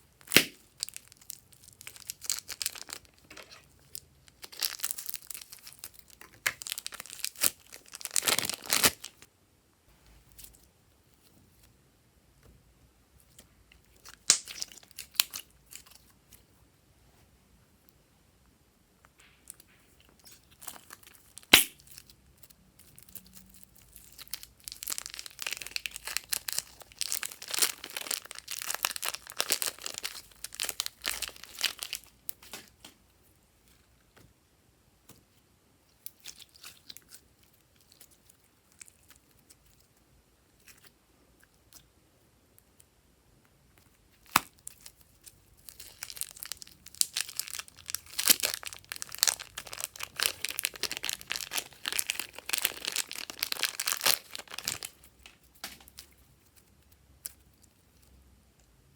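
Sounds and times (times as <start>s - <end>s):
plastic packaging crinkling: 0.2s - 9.3s, 22.9s - 32.8s, 44.2s - 56.1s.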